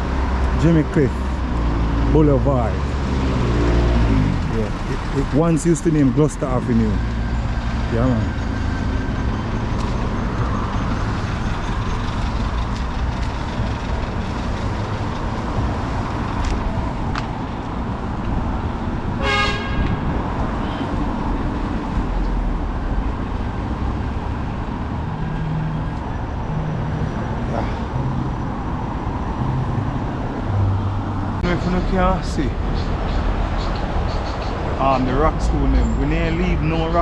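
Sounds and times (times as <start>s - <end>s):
road traffic going by: 0.0s - 37.0s
car horn toot: 19.2s - 20.9s.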